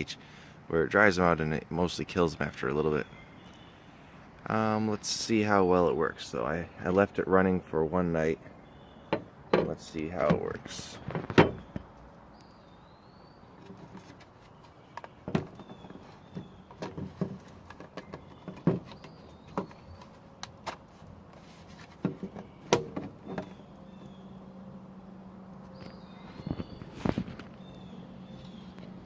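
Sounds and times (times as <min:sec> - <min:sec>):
faint bird chirps: 0:03.0 - 0:04.3, 0:25.7 - 0:28.9.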